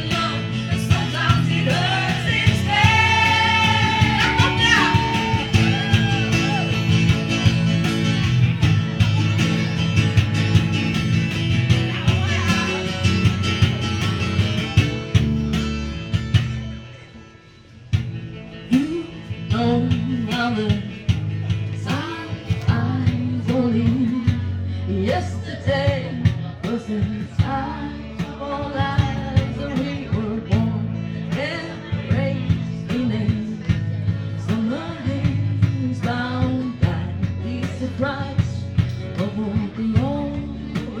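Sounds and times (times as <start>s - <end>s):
person singing: 0.0s - 7.1s
strummed acoustic guitar: 0.0s - 41.0s.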